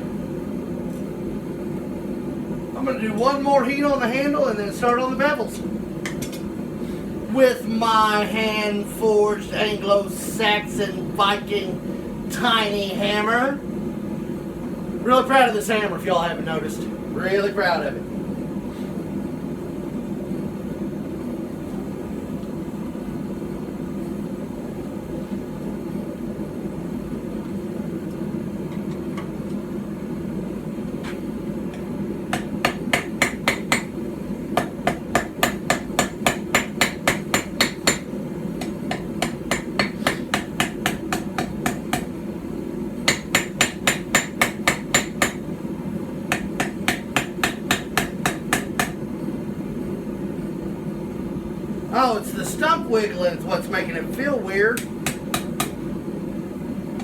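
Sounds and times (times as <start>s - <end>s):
steady low hum: 0.0s - 57.0s
hammer striking hot steel on anvil: 6.0s - 6.5s, 31.0s - 34.0s, 34.6s - 42.2s, 43.0s - 45.5s, 46.3s - 49.0s, 54.8s - 55.8s.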